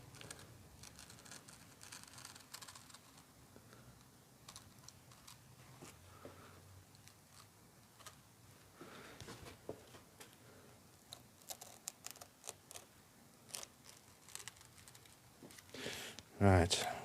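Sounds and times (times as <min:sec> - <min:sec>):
faint clicks and scratching on foam: 0:00.0 - 0:08.2, 0:11.0 - 0:15.8.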